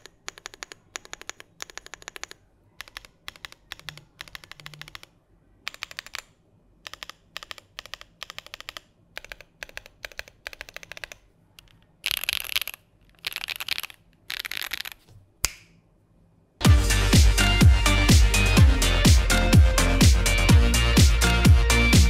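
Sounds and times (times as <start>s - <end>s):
mechanical keyboard typing: 0.0s - 15.0s.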